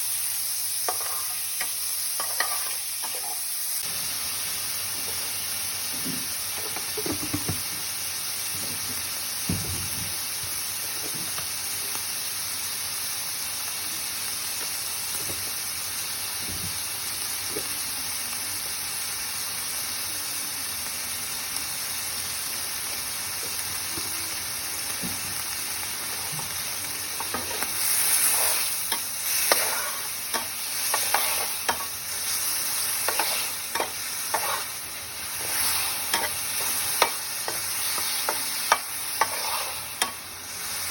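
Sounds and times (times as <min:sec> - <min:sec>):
food sizzling in a pan: 0:00.0 - 0:40.9
stirring scrapes and knocks: 0:33.1 - 0:34.7.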